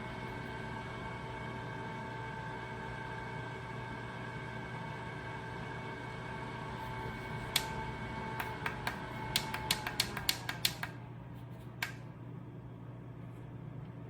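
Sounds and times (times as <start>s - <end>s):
desk fan whirring: 0.0s - 14.0s
fan button clicking: 7.5s - 11.0s.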